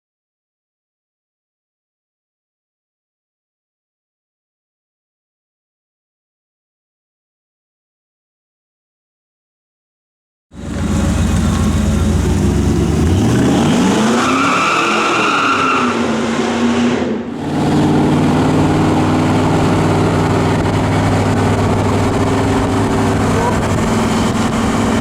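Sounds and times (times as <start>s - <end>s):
high supercharger whine: 10.6s - 25.0s
truck engine revving: 10.6s - 25.0s.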